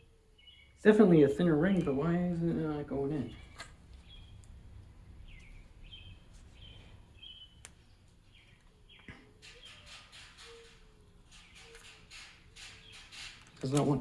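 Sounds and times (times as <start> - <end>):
faint bird chirps: 0.0 - 0.9, 5.2 - 12.1.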